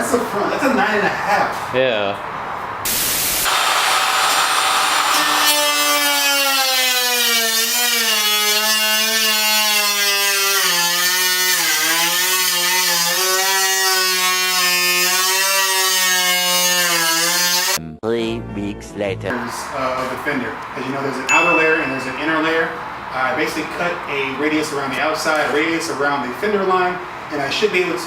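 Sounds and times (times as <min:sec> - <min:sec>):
power tool whining: 0:03.5 - 0:08.2.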